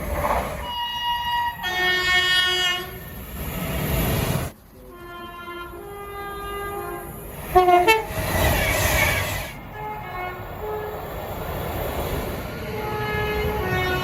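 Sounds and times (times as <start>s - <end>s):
rushing train noise: 0.0s - 14.0s
train horn: 0.6s - 3.0s, 4.8s - 11.1s, 12.6s - 14.0s.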